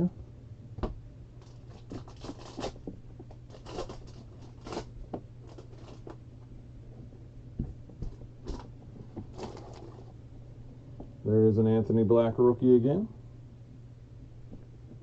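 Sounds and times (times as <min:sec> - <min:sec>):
foil pack crinkling: 0:01.4 - 0:06.2, 0:08.0 - 0:10.1.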